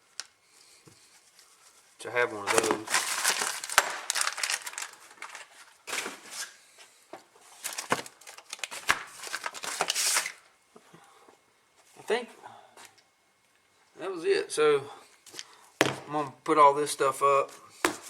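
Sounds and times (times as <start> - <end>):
packaging rustling and crinkling: 1.1 - 6.6, 7.4 - 10.5.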